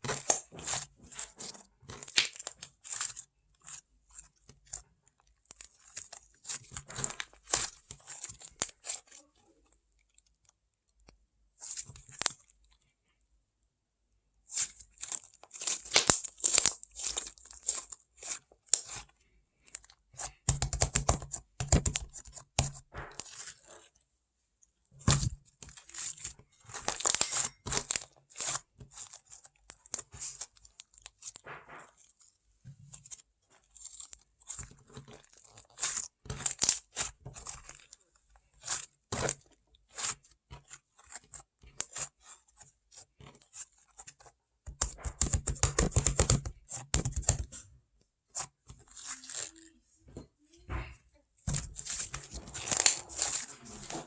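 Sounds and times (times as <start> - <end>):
paper crinkling: 48.3 - 49.8, 51.5 - 54.0.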